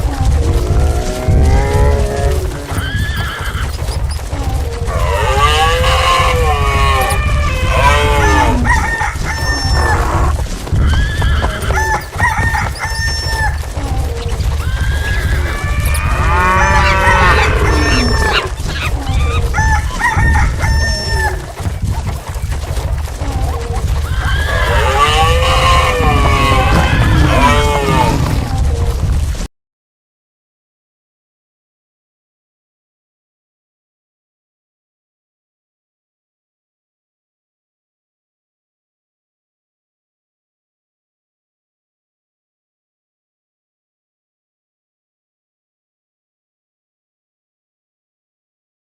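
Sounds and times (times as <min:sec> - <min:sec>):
animal calls: 0:00.0 - 0:28.9
rumble of running hooves: 0:00.0 - 0:29.5
horse whinnies: 0:00.7 - 0:21.6, 0:23.1 - 0:28.5.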